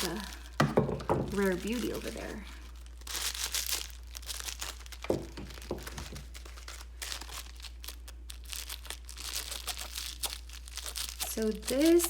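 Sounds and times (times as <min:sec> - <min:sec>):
packaging crinkling and tearing: 0:00.0 - 0:12.0
knock: 0:00.6 - 0:01.3, 0:05.1 - 0:06.2.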